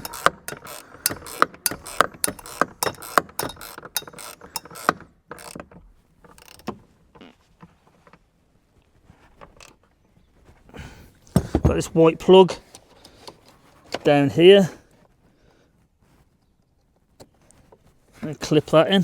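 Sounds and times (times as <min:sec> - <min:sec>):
hand ratchet clicking: 0:00.0 - 0:05.7, 0:06.3 - 0:06.7.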